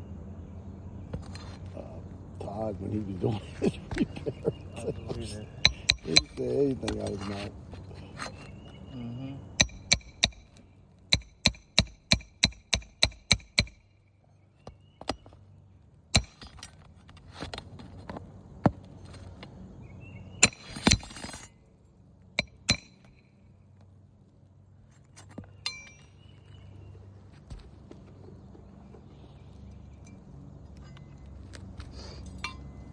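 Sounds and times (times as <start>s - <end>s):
hammer striking nails: 5.6s - 6.4s, 9.6s - 13.9s, 16.2s - 16.7s, 20.4s - 21.4s, 22.4s - 23.2s.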